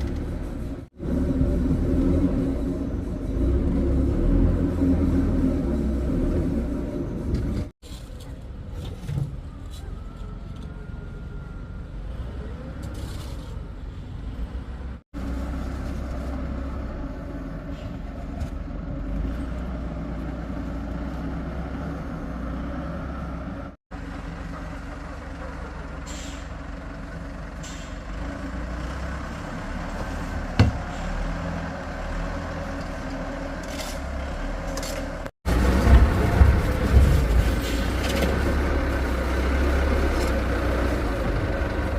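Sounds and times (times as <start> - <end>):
heavy machinery diesel engine running: 19.8 - 41.9.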